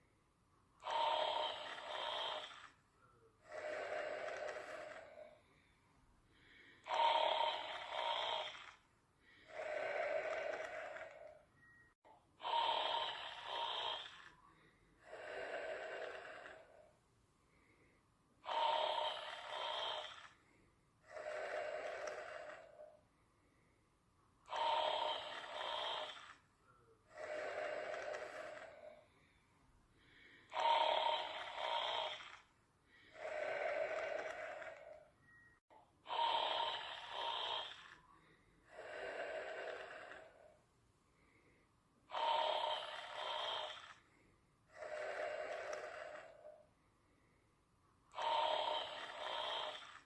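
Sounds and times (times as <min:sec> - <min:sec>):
person snoring: 0:00.8 - 0:02.8, 0:03.4 - 0:05.7, 0:06.3 - 0:11.4, 0:12.4 - 0:16.9, 0:17.5 - 0:23.0, 0:24.4 - 0:26.4, 0:27.0 - 0:29.4, 0:30.0 - 0:35.1, 0:36.0 - 0:40.6, 0:42.1 - 0:46.7, 0:48.1 - 0:50.0.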